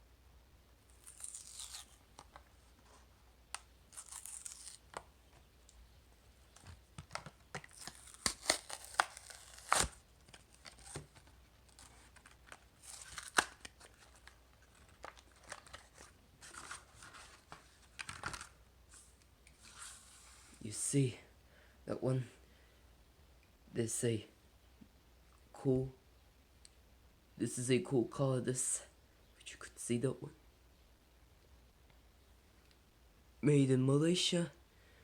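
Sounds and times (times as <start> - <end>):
cardboard and plastic tearing: 0.9 - 2.4, 3.9 - 5.0, 6.6 - 18.5.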